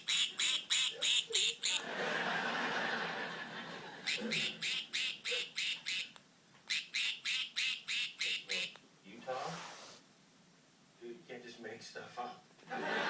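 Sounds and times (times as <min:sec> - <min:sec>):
budgerigar quack-like calls: 0:00.0 - 0:01.8, 0:04.0 - 0:06.1, 0:06.7 - 0:08.7.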